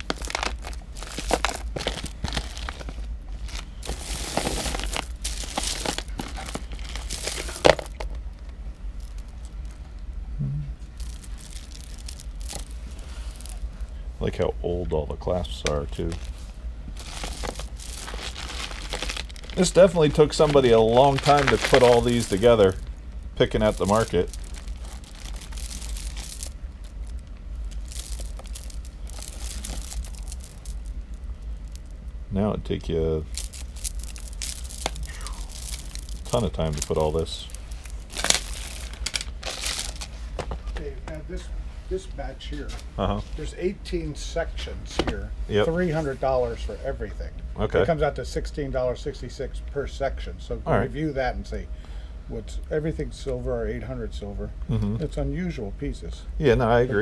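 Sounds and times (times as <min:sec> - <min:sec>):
beaded jewelry rustling and clicking: 0:00.0 - 0:09.8, 0:11.0 - 0:13.8, 0:17.0 - 0:32.0, 0:33.2 - 0:40.6
low rumble: 0:00.0 - 0:40.3.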